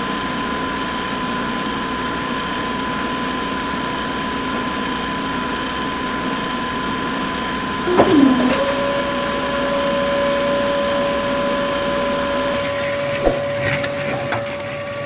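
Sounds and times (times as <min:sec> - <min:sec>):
falling whine: 0:07.8 - 0:15.0.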